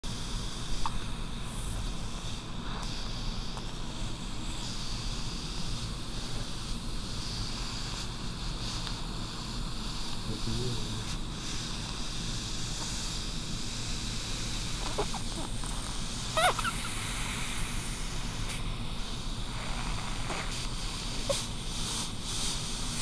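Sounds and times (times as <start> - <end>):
low background hum: 0.0 - 23.0
baby hiccuping: 14.8 - 15.6, 16.4 - 16.8.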